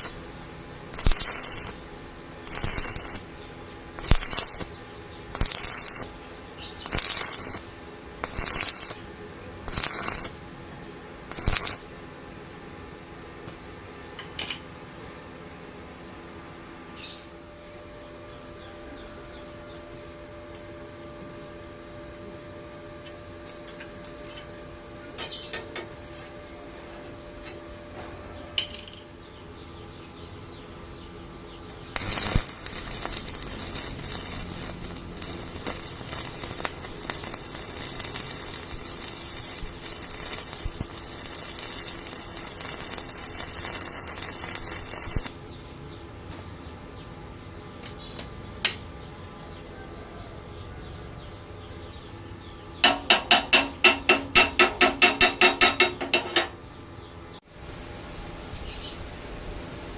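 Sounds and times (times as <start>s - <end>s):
welding arc crackling hiss: 0.0s - 10.5s, 11.2s - 11.9s, 31.9s - 45.4s
low steady hum: 0.0s - 55.0s.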